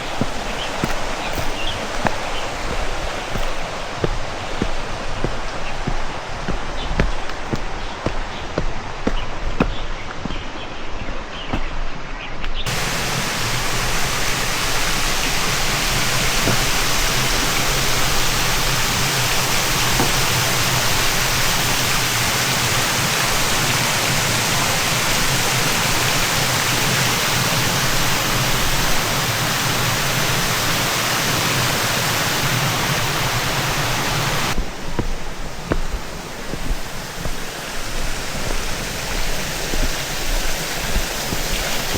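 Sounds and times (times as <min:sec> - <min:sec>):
flowing water rushing: 0:00.0 - 0:12.0, 0:12.7 - 0:41.9
faint footsteps: 0:00.0 - 0:22.3, 0:34.4 - 0:41.9.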